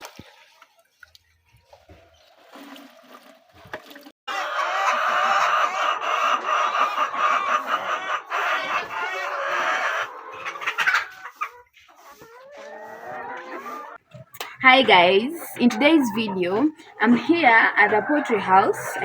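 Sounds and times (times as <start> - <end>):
hens clucking and calling: 4.3 - 19.0.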